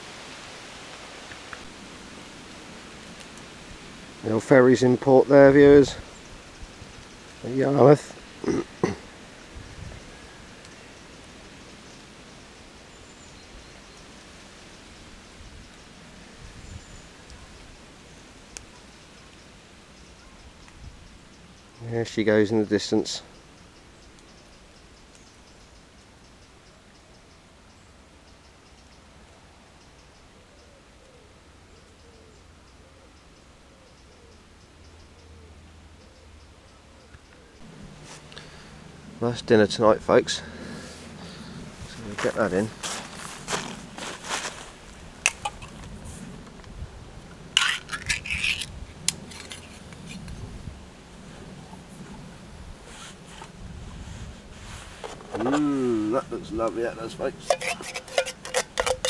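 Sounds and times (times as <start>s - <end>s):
faint steady hiss: 0.0s - 59.0s
metal cookware clinking and scraping: 45.3s - 45.8s, 47.6s - 50.3s, 57.4s - 59.0s.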